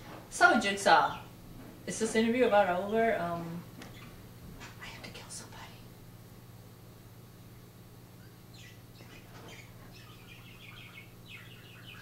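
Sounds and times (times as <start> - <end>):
steady low hum: 0.0 - 12.0
bird chirping: 8.2 - 12.0.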